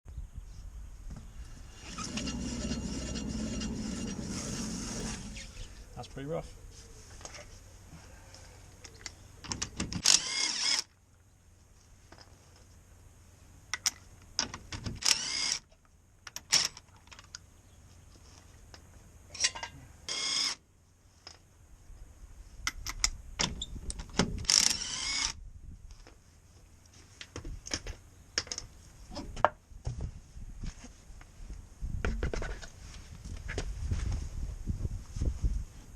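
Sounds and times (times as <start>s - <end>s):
handheld power tool running: 1.8s - 5.4s, 10.0s - 10.8s, 15.0s - 15.6s, 24.5s - 25.3s.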